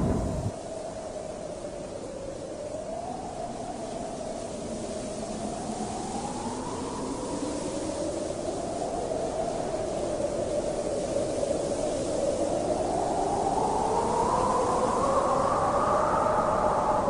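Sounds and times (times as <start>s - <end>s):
storm wind howling: 0.0s - 0.5s.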